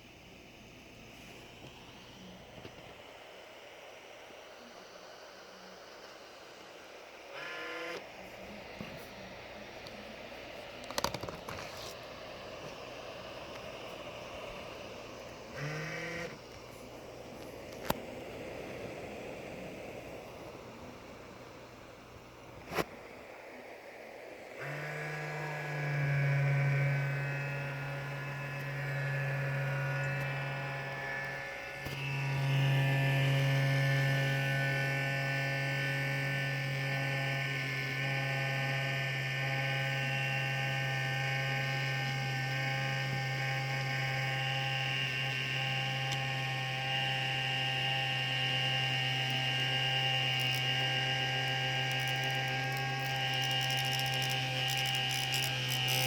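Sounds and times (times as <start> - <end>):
laptop cooling fan humming: 0.0 - 56.0
high whining tones: 1.3 - 39.0.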